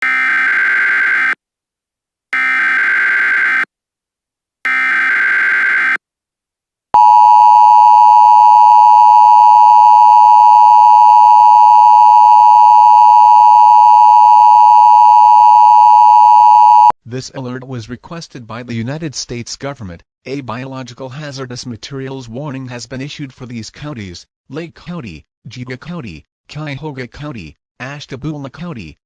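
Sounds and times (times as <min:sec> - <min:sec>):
two-tone attention signal: 0:07.0 - 0:16.9.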